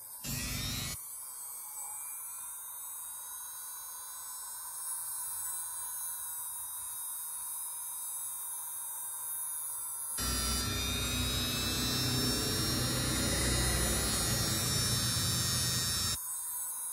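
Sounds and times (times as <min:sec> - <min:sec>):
electric grinder whining: 0:10.2 - 0:16.2.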